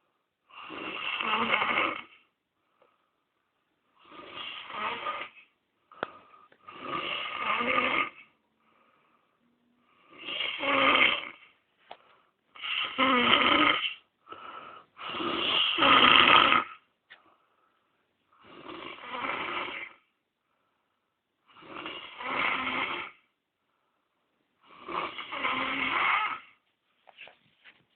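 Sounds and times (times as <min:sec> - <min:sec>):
man snoring: 0:00.5 - 0:02.3, 0:04.0 - 0:05.5, 0:06.7 - 0:08.3, 0:10.0 - 0:11.5, 0:12.6 - 0:16.9, 0:18.4 - 0:20.1, 0:21.5 - 0:23.3, 0:24.6 - 0:26.6.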